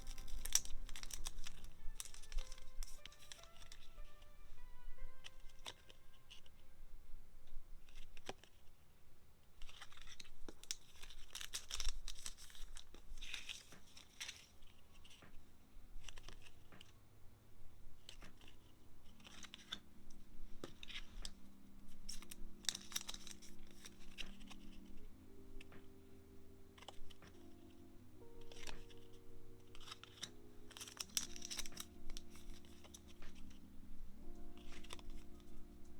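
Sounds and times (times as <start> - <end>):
paper and tape tearing: 0.0 - 4.3, 9.7 - 15.2, 18.0 - 19.9, 20.5 - 25.0, 28.4 - 33.6, 34.6 - 35.5
soft background music: 0.0 - 35.9.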